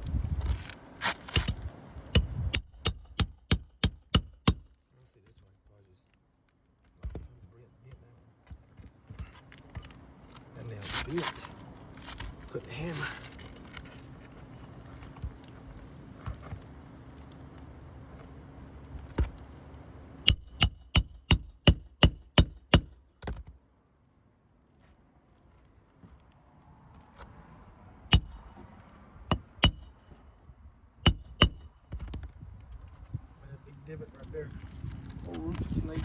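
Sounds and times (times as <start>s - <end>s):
hammer striking roofing nails: 2.2s - 4.7s, 20.3s - 23.5s, 28.1s - 28.6s, 29.3s - 30.0s, 31.1s - 32.1s.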